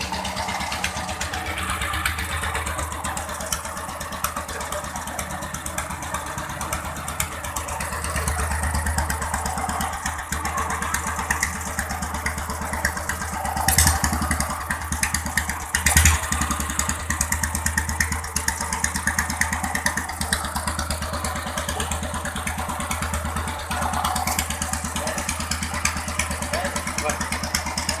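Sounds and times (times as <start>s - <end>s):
single-cylinder engine running: 0.0s - 28.0s.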